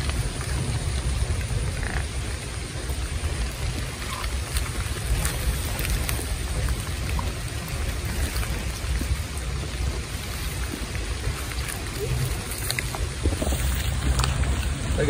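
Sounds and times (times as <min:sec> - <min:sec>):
river water rushing: 0:00.0 - 0:15.0.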